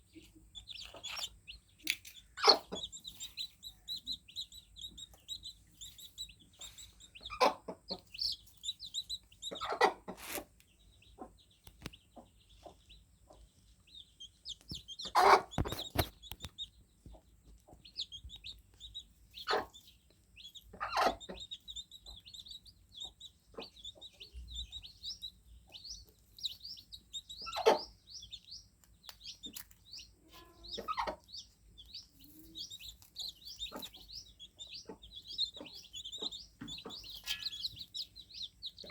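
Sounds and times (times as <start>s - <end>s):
chicks cheeping: 0.0s - 38.9s.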